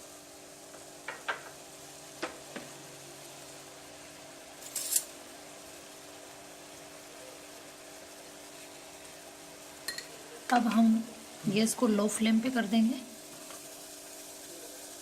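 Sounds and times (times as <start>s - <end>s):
utensils clinking against a pan: 4.6s - 5.2s, 9.8s - 10.9s.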